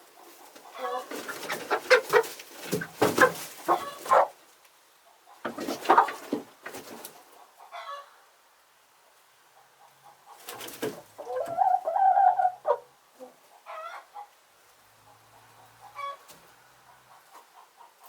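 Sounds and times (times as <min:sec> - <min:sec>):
hens clucking and calling: 0:00.0 - 0:08.3, 0:09.4 - 0:14.4, 0:15.0 - 0:18.0.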